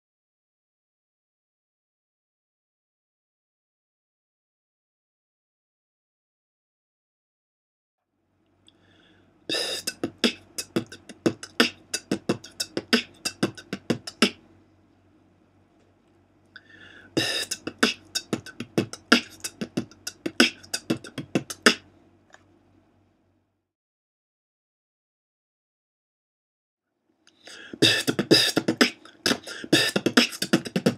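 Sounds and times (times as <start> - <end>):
beatboxing: 9.5 - 14.4, 17.2 - 21.9, 27.4 - 30.9.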